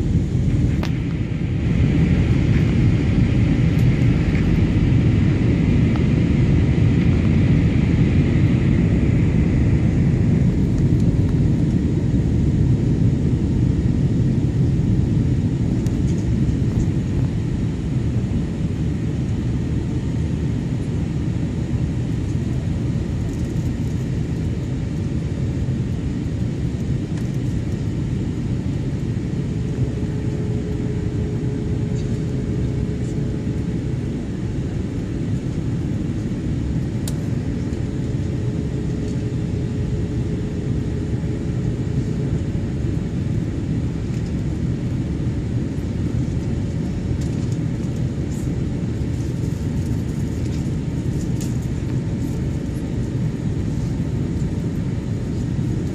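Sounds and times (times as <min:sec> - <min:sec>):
engine and airflow rumble: 0:00.0 - 0:55.9.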